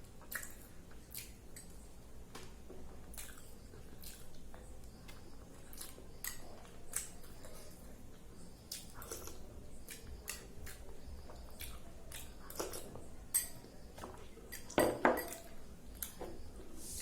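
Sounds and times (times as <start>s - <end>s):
utensils clinking on a plate: 12.6s - 15.6s.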